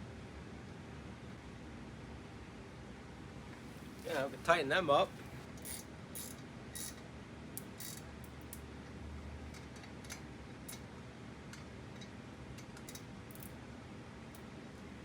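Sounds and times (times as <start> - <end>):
metallic clicks of hand tools: 11.5 - 13.5.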